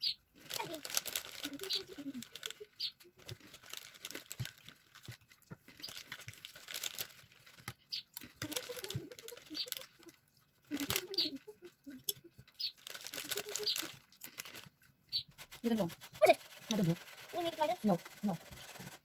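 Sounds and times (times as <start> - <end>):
plastic bricks rustling: 0.1 - 19.0
child's voice: 0.5 - 2.7, 8.4 - 10.1, 10.7 - 12.3, 13.2 - 13.9, 15.7 - 18.0
plastic bricks clicking: 3.2 - 10.1.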